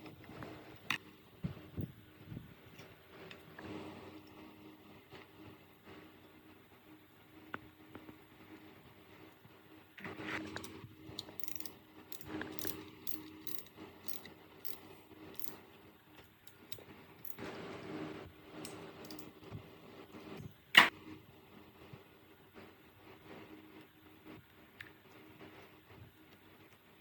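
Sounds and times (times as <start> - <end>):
tools clicking and rattling: 10.5 - 15.6, 16.5 - 17.4, 19.0 - 19.3.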